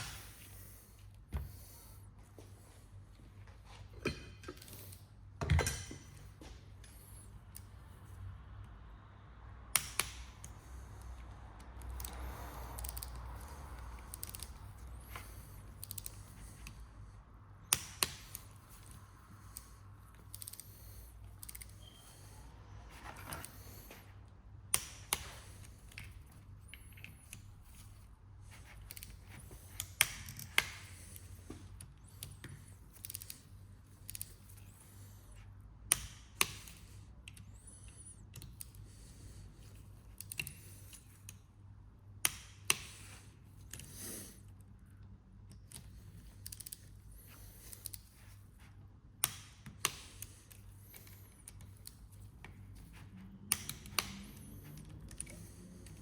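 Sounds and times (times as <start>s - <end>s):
metal parts and tools clicking: 11.6s - 16.8s, 28.8s - 34.8s.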